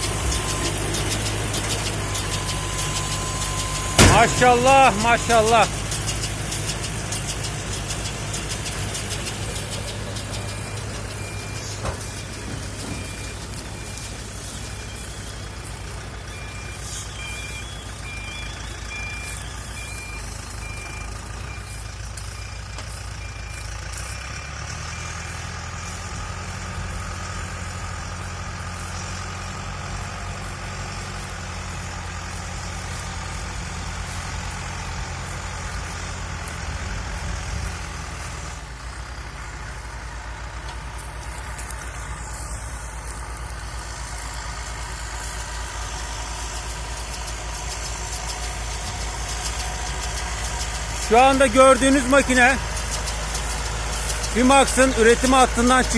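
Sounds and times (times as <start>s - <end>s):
repeating electronic beep: 0.0s - 5.9s
tractor engine running: 0.0s - 55.9s.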